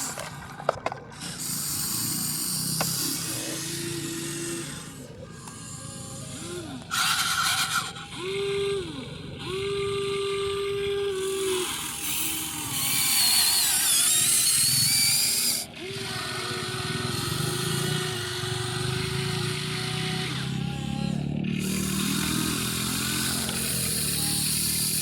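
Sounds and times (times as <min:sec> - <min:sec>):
small electric motors whining: 0:00.0 - 0:25.0.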